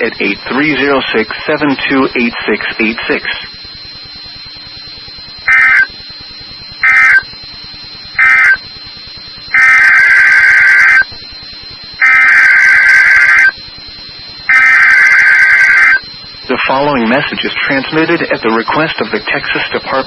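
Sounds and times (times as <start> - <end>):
buzzy warbling data bursts: 0.0 - 3.7, 5.3 - 5.9, 6.5 - 7.3, 7.9 - 8.9, 9.5 - 11.1, 12.0 - 20.0
faint high whine: 0.0 - 20.0.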